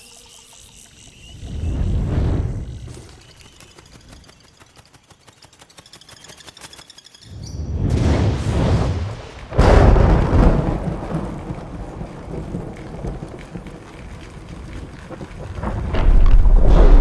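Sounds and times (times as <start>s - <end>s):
thunder cracking and rumbling: 7.6s - 17.0s
steady rain: 7.8s - 17.0s.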